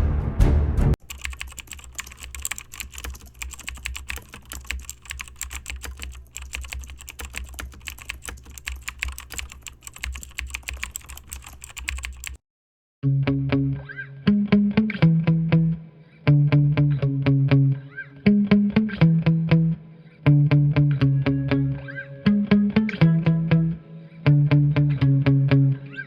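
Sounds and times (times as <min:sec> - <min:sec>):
fast typing key clicks: 0:01.0 - 0:12.4.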